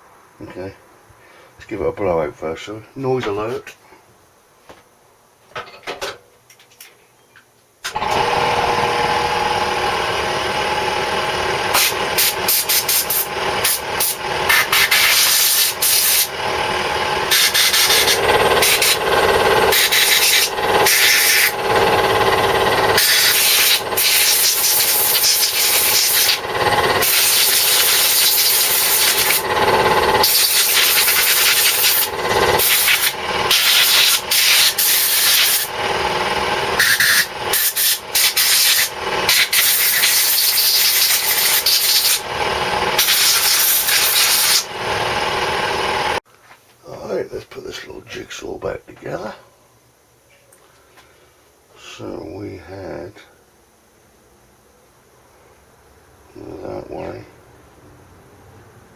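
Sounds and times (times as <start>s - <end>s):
air blow gun hissing: 10.6s - 46.2s.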